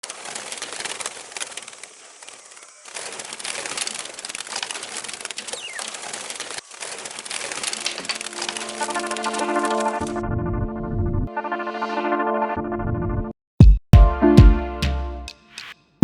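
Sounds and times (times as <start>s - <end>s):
birds calling: 5.4s - 6.7s.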